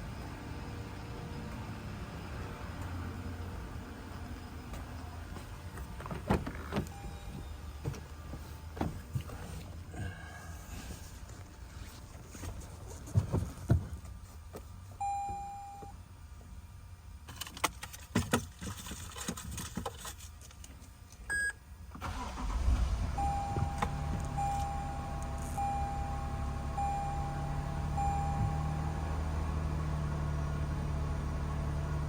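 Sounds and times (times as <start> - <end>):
truck engine starting and idling: 22.0 - 32.0
warning chime beeping: 23.2 - 29.0.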